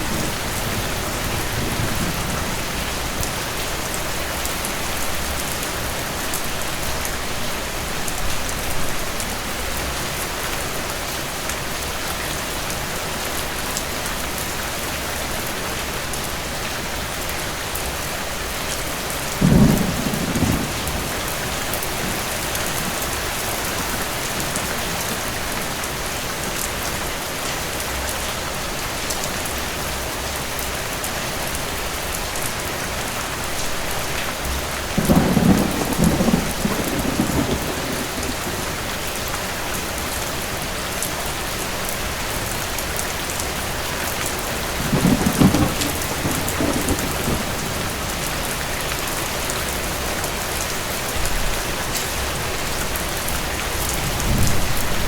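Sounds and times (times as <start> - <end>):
thunder rumbling: 0.0 - 3.9, 19.4 - 25.4, 34.8 - 39.2, 44.3 - 50.0, 53.7 - 55.0
heavy rain: 0.0 - 55.0.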